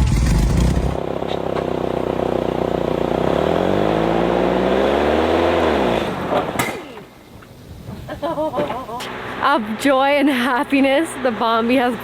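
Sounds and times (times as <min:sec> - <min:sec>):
snow vehicle engine running: 0:00.0 - 0:06.6.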